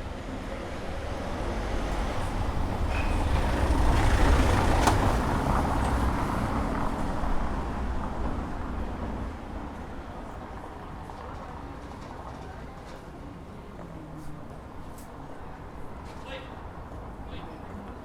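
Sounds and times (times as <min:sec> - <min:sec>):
vehicle passing by: 0:01.2 - 0:08.0.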